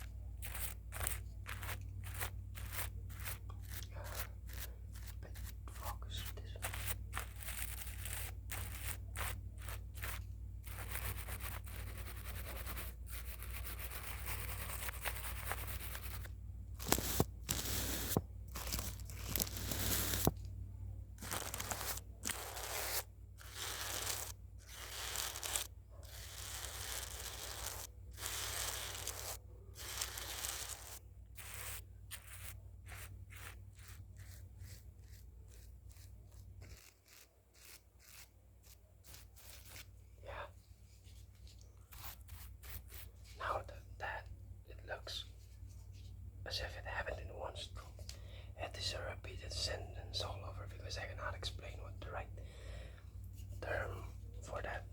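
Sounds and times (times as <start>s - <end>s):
scratchy sketching strokes: 0.0s - 20.4s, 21.2s - 40.0s, 41.8s - 43.6s
low steady hum: 0.0s - 54.9s.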